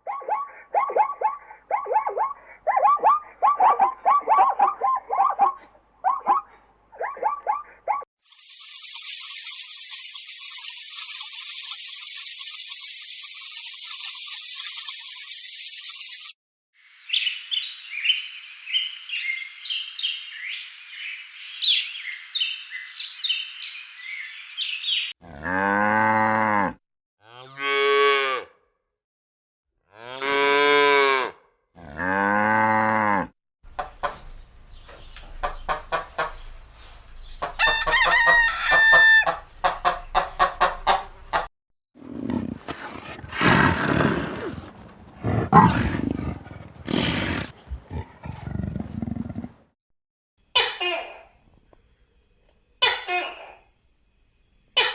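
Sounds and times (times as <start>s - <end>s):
rooster crowing: 37.6s - 39.4s
cattle mooing: 42.0s - 49.5s
rough noisy animal call: 42.0s - 49.6s
hens clucking: 42.1s - 49.5s.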